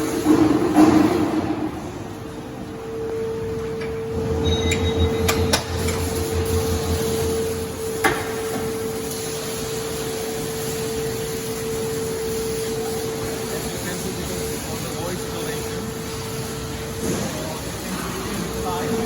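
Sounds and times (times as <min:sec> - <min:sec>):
diesel generator running: 0:00.0 - 0:19.0.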